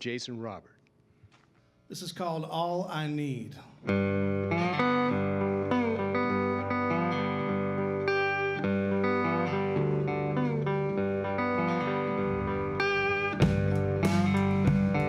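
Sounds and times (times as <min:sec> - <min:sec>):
blues slide guitar: 0:03.8 - 0:15.0.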